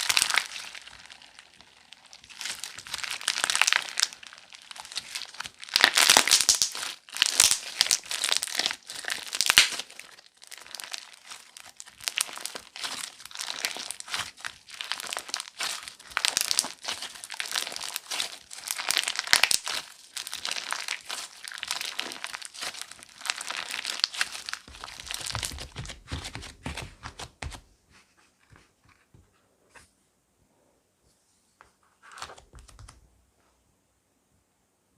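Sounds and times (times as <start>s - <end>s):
slime squeezed crackling pops: 2.3s - 10.1s, 10.7s - 25.9s.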